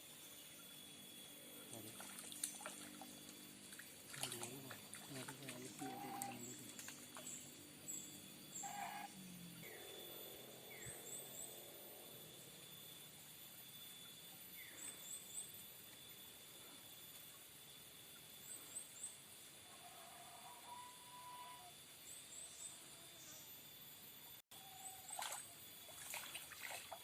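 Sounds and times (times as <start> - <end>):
small bird chirping: 4.2 - 16.2.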